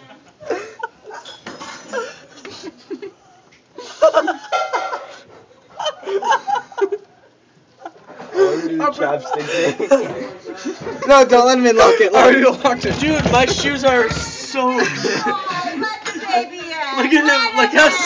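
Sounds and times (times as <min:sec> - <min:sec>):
people laughing: 0:03.8 - 0:07.2, 0:07.8 - 0:16.3.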